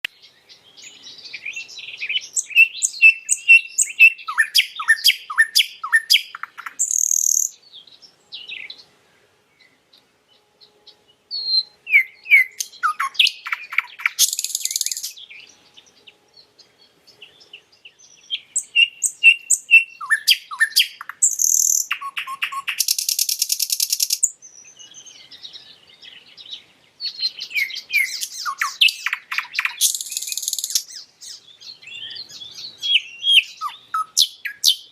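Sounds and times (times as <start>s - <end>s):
nightingale singing: 0.0s - 34.9s.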